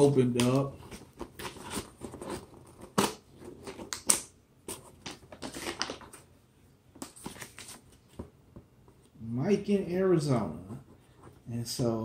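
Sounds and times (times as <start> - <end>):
package rustling and crinkling: 4.7 - 6.3.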